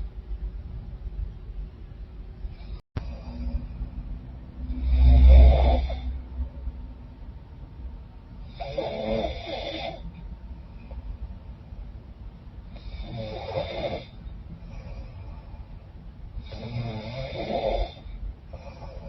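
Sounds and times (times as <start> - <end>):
woman snoring: 4.7 - 6.2, 8.5 - 10.0, 12.7 - 14.2, 16.4 - 19.0.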